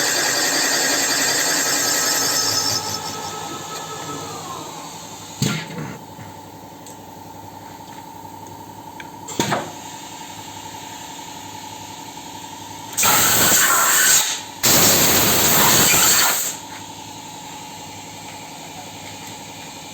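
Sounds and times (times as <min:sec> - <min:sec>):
machine humming: 0:00.0 - 0:05.5.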